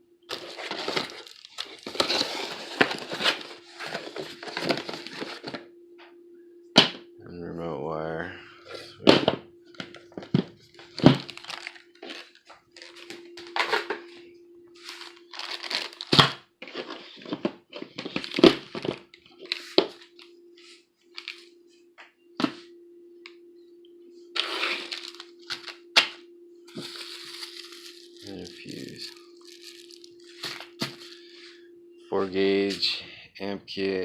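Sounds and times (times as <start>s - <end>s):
faint steady hum: 0.0s - 34.0s
plastic packaging crinkling: 0.3s - 5.6s, 9.8s - 13.9s, 14.8s - 20.2s, 24.4s - 25.8s, 26.7s - 31.2s.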